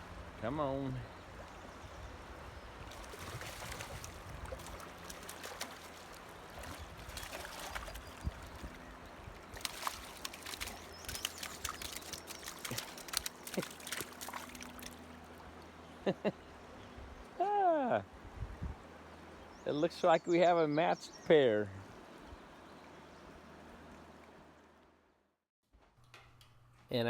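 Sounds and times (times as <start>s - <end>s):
water splashing and trickling: 0.0s - 16.3s.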